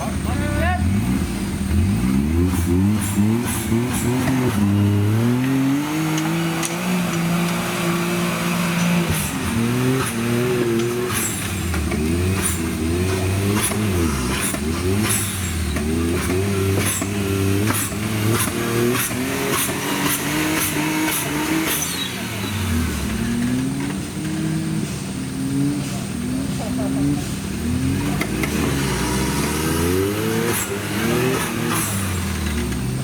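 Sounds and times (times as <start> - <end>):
off-road vehicle engine revving: 0.0 - 33.0.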